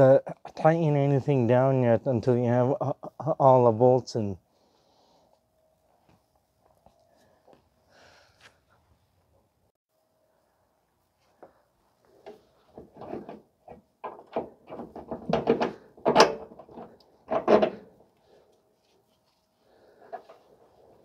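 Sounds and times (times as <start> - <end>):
metal bolts and tools clinking: 12.8 - 17.9.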